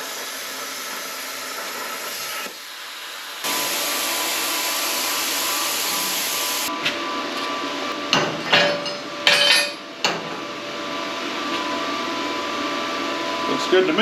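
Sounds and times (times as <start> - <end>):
shop machinery hum: 0.0 - 14.0
steel pieces clanking on metal: 8.1 - 10.3.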